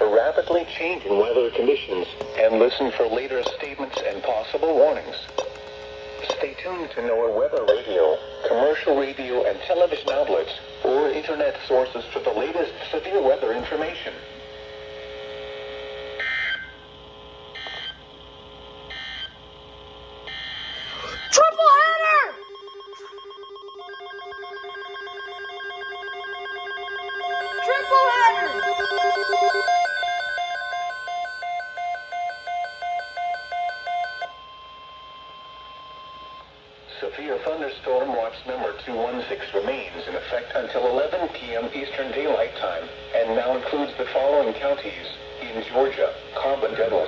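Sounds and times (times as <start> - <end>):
weather radio alarm beeping: 20.7 - 34.4
low two-note electronic tone: 22.4 - 34.4.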